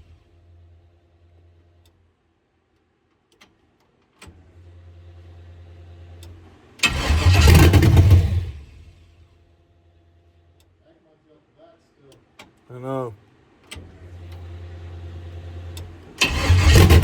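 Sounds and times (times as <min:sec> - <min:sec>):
click: 0:01.8 - 0:02.0, 0:02.8 - 0:04.4, 0:06.2 - 0:06.4, 0:13.6 - 0:14.5, 0:15.7 - 0:16.4
engine cranking on starter: 0:06.8 - 0:09.0, 0:15.8 - 0:17.0.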